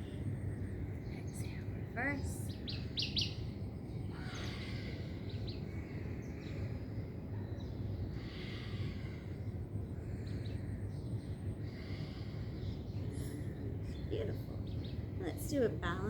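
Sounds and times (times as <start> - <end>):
low background hum: 0.0 - 16.0.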